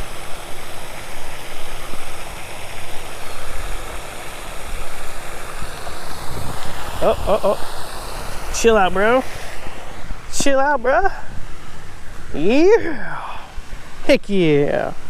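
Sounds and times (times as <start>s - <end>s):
wind buffeting microphone: 4.6s - 12.8s.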